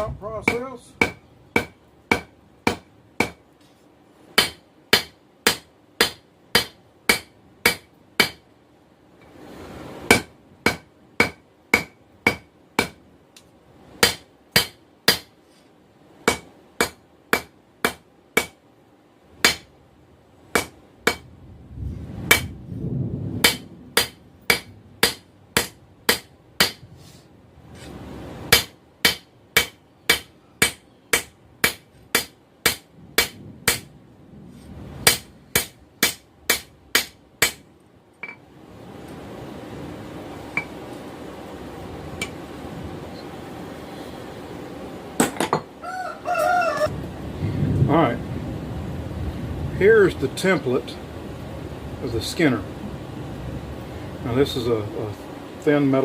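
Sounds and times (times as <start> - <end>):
hammer striking steel on anvil: 0.0 - 3.4, 4.4 - 8.4, 10.1 - 13.0, 14.0 - 15.3, 16.2 - 18.6, 19.4 - 19.7, 20.5 - 21.2, 22.3 - 22.5, 23.4 - 26.8, 28.5 - 33.8, 35.0 - 37.6, 38.2 - 38.4.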